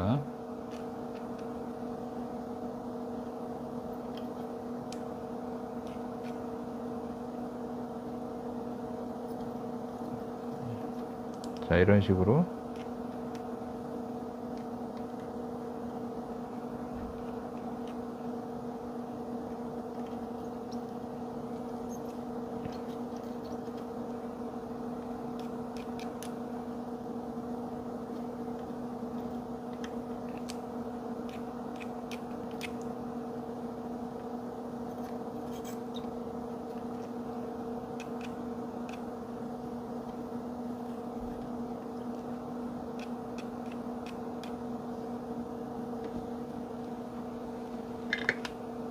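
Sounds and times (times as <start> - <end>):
steady electrical hum: 0.0 - 48.9.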